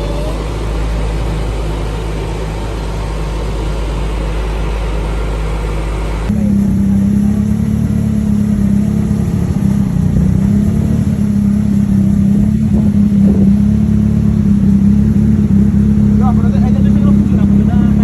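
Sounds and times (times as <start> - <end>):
car engine running: 0.0 - 18.0.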